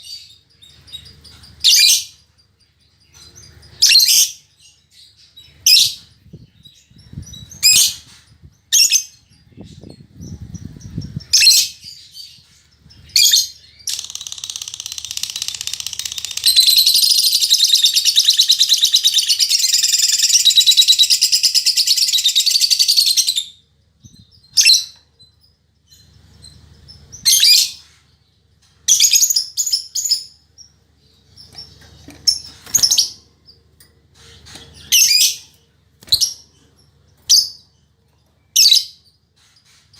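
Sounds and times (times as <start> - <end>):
lovebird chirping: 0.0 - 28.2, 28.8 - 39.9
lovebird chattering song: 5.3 - 28.0.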